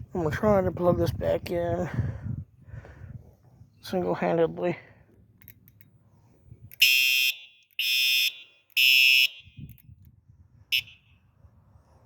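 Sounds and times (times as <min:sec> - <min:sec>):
fire alarm horn chirp: 0:06.8 - 0:09.6, 0:10.7 - 0:11.2
fire alarm horn blasts: 0:06.8 - 0:09.7, 0:10.7 - 0:11.2.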